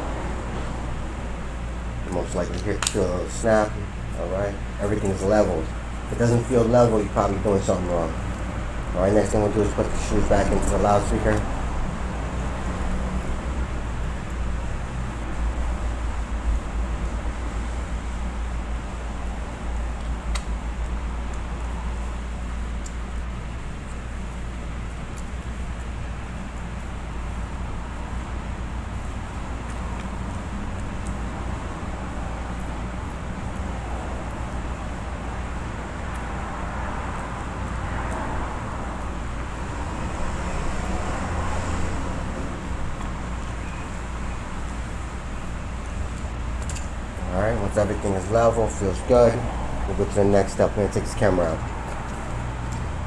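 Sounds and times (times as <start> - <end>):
low rumble and hiss: 0.0 - 53.0
faint small clicks: 20.0 - 20.5.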